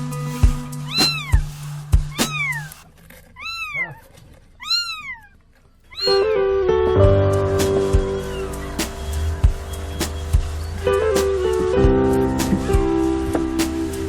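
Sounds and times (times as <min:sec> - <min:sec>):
music: 0:00.0 - 0:02.8, 0:06.1 - 0:14.0
kitten meowing: 0:00.8 - 0:02.8, 0:03.4 - 0:06.4.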